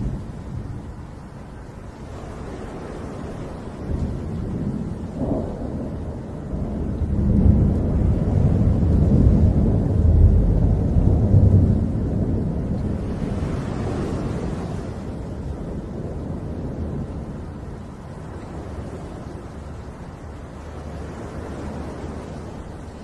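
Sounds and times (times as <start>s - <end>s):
rain: 0.0s - 23.0s
wind: 0.0s - 23.0s
long deep rumble: 3.9s - 13.1s.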